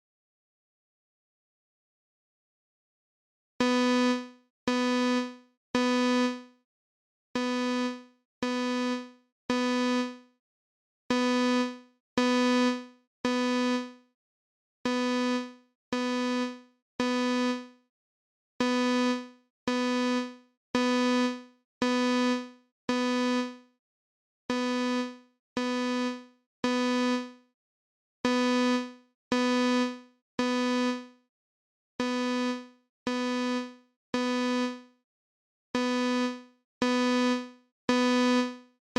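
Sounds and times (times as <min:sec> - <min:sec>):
fire alarm beeping in threes: 0:03.6 - 0:06.4, 0:07.4 - 0:10.2, 0:11.1 - 0:13.9, 0:14.9 - 0:17.7, 0:18.6 - 0:23.6, 0:24.5 - 0:27.3, 0:28.2 - 0:31.0, 0:32.0 - 0:34.8, 0:35.8 - 0:38.5.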